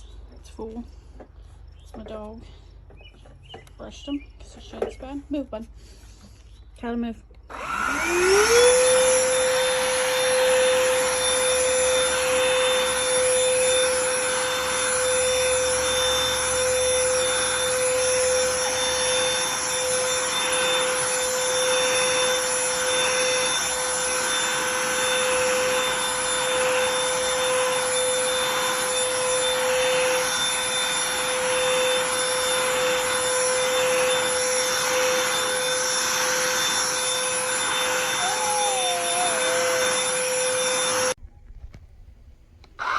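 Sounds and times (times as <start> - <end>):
handheld vacuum motor whine: 7.3 - 41.2, 42.6 - 42.9.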